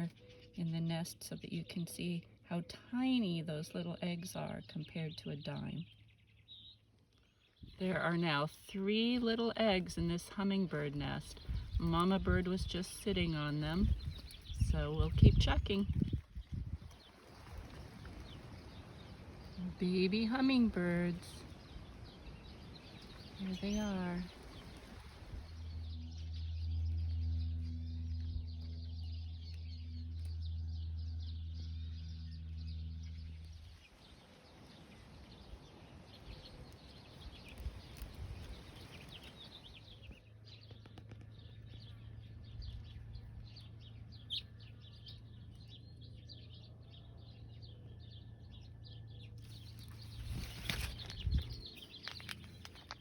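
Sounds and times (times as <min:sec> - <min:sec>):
small birds chirping: 0:00.0 - 0:53.0
fainter low hum: 0:07.3 - 0:40.2
steady low hum: 0:07.7 - 0:40.2.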